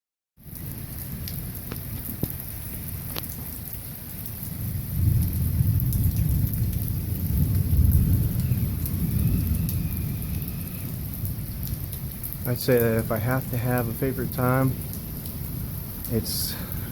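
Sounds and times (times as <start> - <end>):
heavy rain hissing: 0.7 - 16.9
deep rolling thunder: 4.5 - 12.8.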